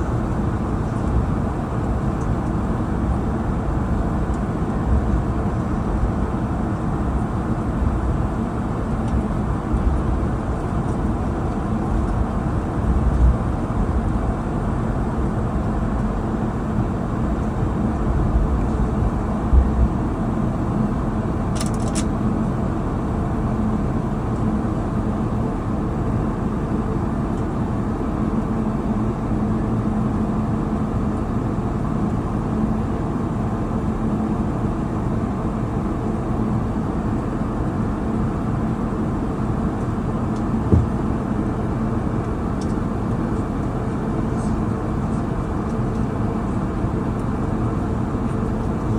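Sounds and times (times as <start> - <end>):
aircraft cabin rumble: 0.0 - 48.9
low bumps: 40.7 - 41.2.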